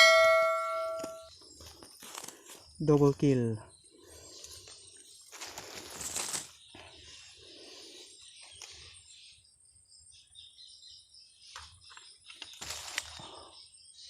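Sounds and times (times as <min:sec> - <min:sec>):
bird chirps: 0:00.0 - 0:02.0, 0:06.4 - 0:14.0.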